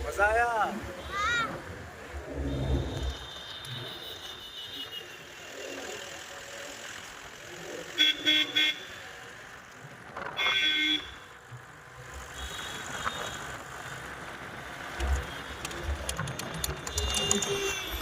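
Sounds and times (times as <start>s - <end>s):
vehicle horn tooting: 2.5s - 5.3s, 10.4s - 11.2s, 16.8s - 18.0s
vehicle running noise: 4.9s - 18.0s.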